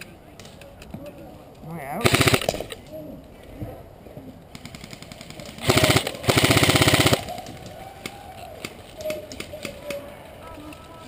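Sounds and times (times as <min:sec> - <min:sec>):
airsoft gun firing bursts: 0:02.0 - 0:02.8, 0:04.5 - 0:07.5.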